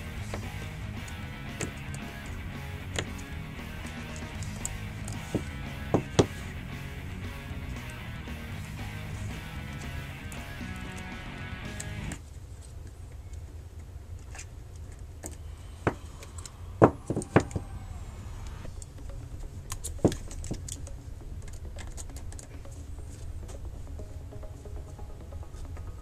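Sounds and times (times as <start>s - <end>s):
screwdriver and screws clicking: 0.0s - 12.2s
steady low hum: 0.0s - 26.0s.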